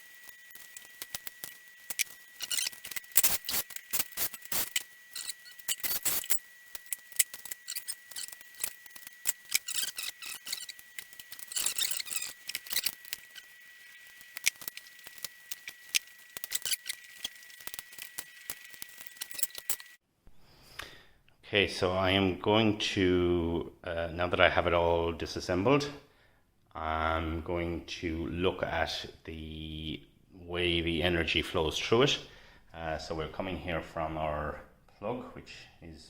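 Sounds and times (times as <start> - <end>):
small parts clicking and clattering: 0.0 - 20.0.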